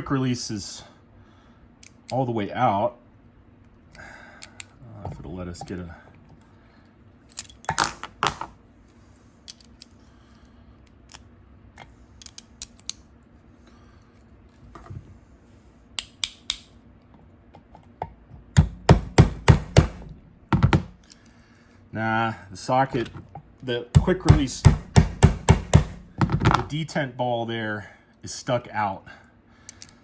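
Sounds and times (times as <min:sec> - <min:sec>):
metal socket clicking on ratchet: 0:11.8 - 0:13.1
loud metal knocks: 0:18.6 - 0:20.9, 0:24.0 - 0:26.6.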